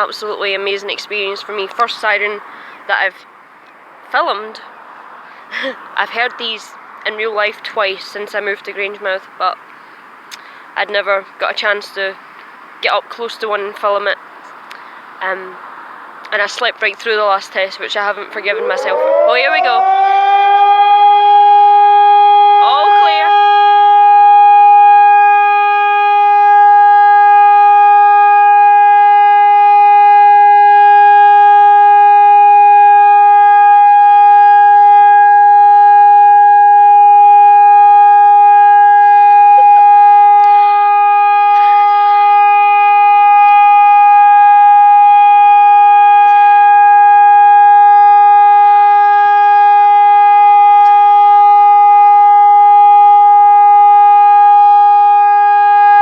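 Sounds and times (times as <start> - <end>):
steady warning siren tone: 18.0 - 56.0.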